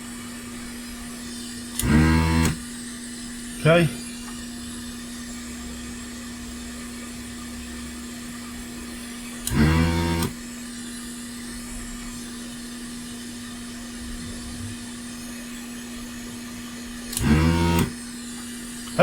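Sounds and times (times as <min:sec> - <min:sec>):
vacuum pump buzzing: 0:00.0 - 0:19.0
hot air blower rushing: 0:01.2 - 0:04.3, 0:09.4 - 0:13.4, 0:16.9 - 0:19.0.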